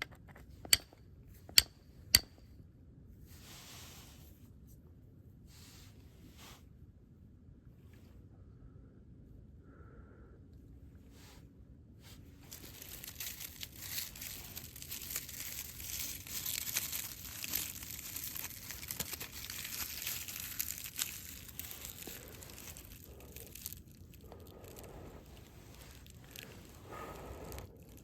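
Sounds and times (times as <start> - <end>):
material crinkling and rustling: 12.0 - 28.0.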